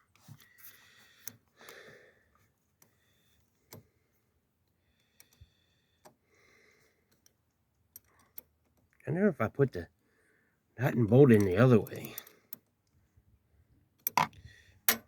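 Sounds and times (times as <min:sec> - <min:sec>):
faint clicks and taps of bolt: 0:03.6 - 0:03.9, 0:05.0 - 0:06.2, 0:07.0 - 0:09.0, 0:14.0 - 0:15.0.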